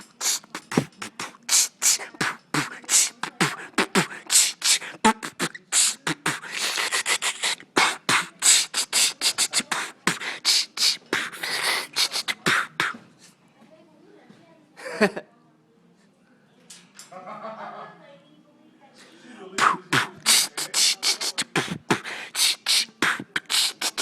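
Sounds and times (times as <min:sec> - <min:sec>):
man beatboxing: 0:00.0 - 0:13.0, 0:19.6 - 0:24.0.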